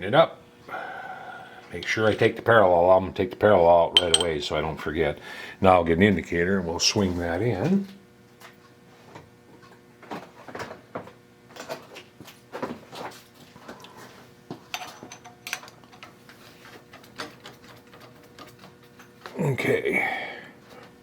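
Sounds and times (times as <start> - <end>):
faint steady hum: 0.0 - 9.7, 19.2 - 21.0
metal tools clicking and knocking: 4.0 - 4.5, 14.7 - 16.1.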